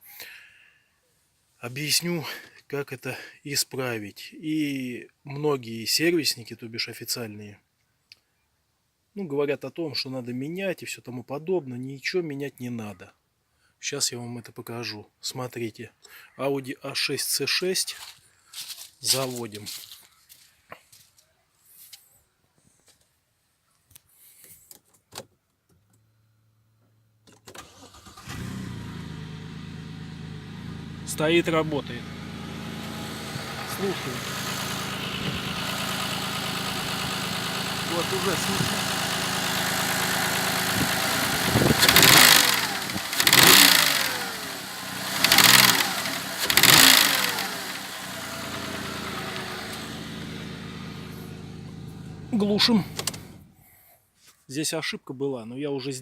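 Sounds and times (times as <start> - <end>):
car engine starting and idling: 27.5 - 53.6.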